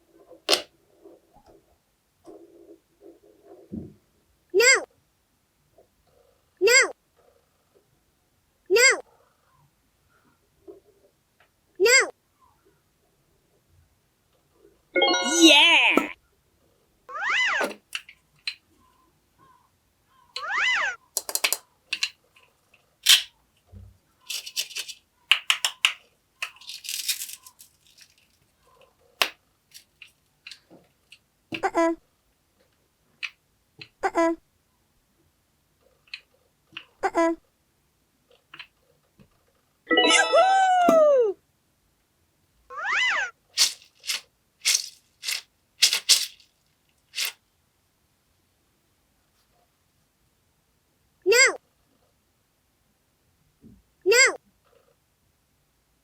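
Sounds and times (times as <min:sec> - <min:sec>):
brief rustle: 0:23.0 - 0:23.3, 0:24.2 - 0:28.9, 0:29.7 - 0:30.6, 0:43.6 - 0:47.4
sand crunching: 0:43.6 - 0:46.5, 0:47.1 - 0:47.4.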